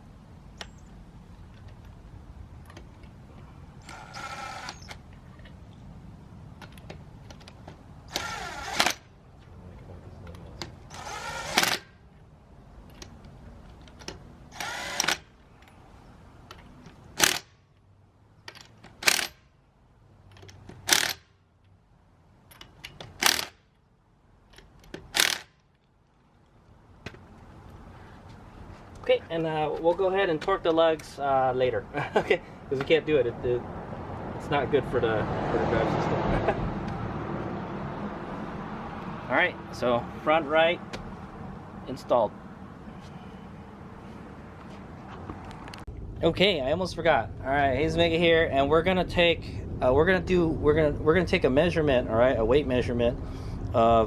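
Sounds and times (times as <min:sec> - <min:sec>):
impact wrench bursts: 0:03.8 - 0:05.0, 0:08.1 - 0:09.0, 0:10.9 - 0:12.0, 0:14.5 - 0:15.3, 0:17.2 - 0:17.6, 0:19.0 - 0:19.5, 0:20.8 - 0:21.4, 0:23.0 - 0:23.7, 0:25.0 - 0:25.6.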